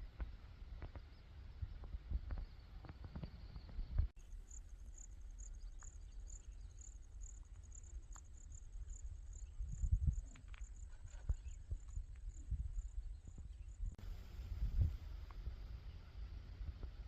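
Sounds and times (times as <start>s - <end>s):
cricket chirping: 0.1s - 17.0s
low rumble: 12.5s - 17.0s.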